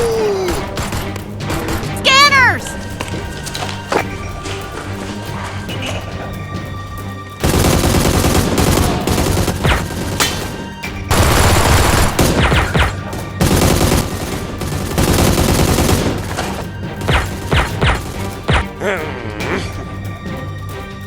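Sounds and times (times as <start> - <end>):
automatic gunfire sound effects: 7.4 - 18.7.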